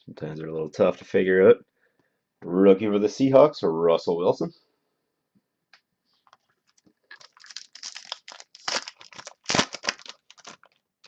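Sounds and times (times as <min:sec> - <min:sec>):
wrapper tearing and crinkling: 0:06.6 - 0:11.0.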